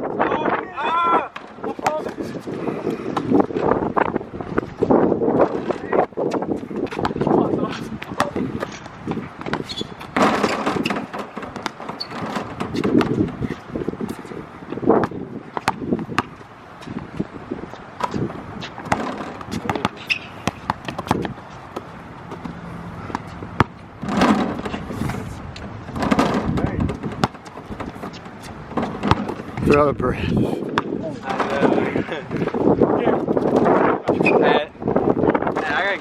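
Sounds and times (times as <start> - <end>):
wind noise on microphone: 0.0 - 36.0
basketball bouncing on court: 8.0 - 13.4, 15.0 - 16.5, 18.0 - 24.8, 26.0 - 29.6.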